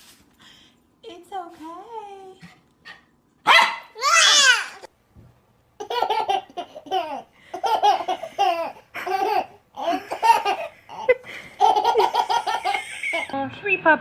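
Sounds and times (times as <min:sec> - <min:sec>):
baby giggling: 0:05.8 - 0:13.3.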